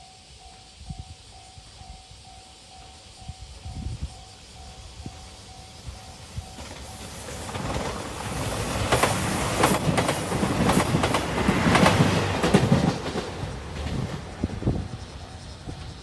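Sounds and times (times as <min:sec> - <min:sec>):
diesel train passing: 0:00.0 - 0:16.0
wheels clacking over rail joints: 0:06.1 - 0:16.0.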